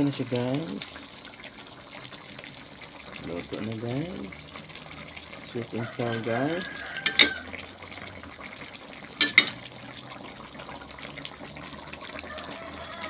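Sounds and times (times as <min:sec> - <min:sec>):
liquid bubbling in a pan: 0:00.0 - 0:13.0
utensil clink: 0:07.0 - 0:07.4, 0:09.2 - 0:09.6.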